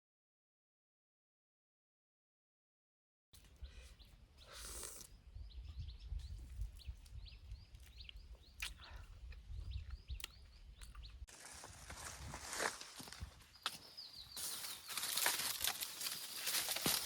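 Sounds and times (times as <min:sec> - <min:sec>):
small birds chirping: 0:03.4 - 0:11.4, 0:12.6 - 0:17.0
rustling: 0:14.4 - 0:17.0.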